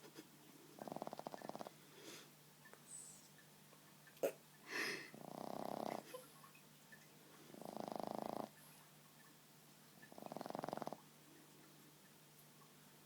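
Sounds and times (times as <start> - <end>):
dog snoring: 0.8 - 1.8, 5.1 - 6.2, 7.5 - 8.6, 10.1 - 11.0.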